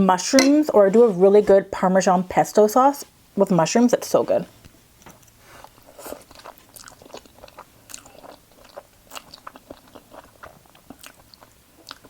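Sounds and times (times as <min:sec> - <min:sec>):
person chewing with wet smacks: 0:05.6 - 0:12.0.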